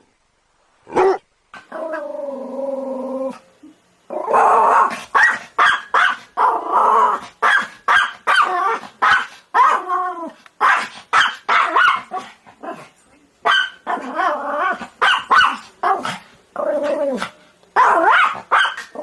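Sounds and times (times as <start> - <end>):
dog barking: 4.8 - 6.3, 7.4 - 9.8, 10.6 - 12.2, 13.4 - 14.0, 15.0 - 15.7, 17.8 - 19.0.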